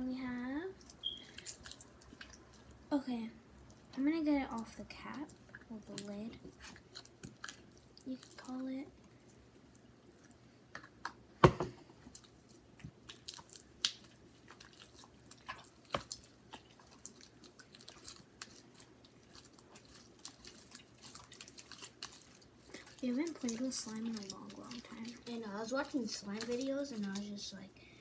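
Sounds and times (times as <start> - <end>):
slime squelching and clicking: 0.8 - 2.7, 3.6 - 8.7, 12.1 - 27.4.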